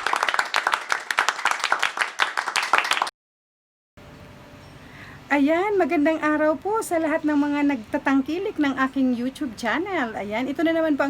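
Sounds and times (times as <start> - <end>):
clapping: 0.0 - 3.1.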